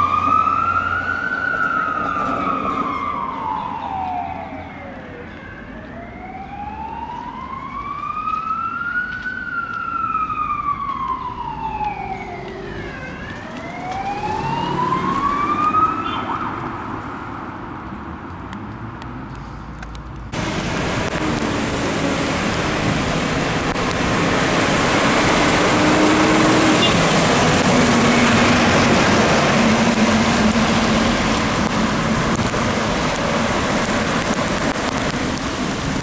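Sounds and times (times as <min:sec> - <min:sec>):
fire engine siren wailing: 0:00.0 - 0:17.3, 0:20.3 - 0:36.0
road vehicle engine: 0:10.4 - 0:36.0.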